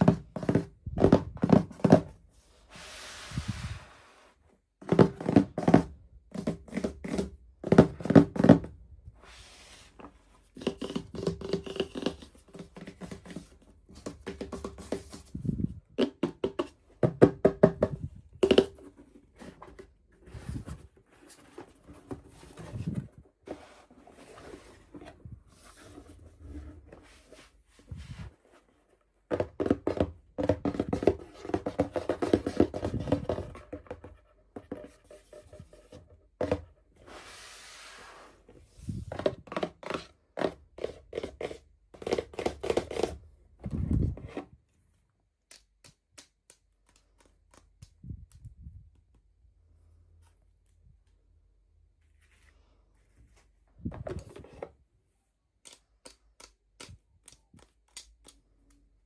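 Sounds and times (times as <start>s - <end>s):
plastic toys knocking and tapping: 4.8s - 8.8s, 10.5s - 19.0s, 29.3s - 36.8s.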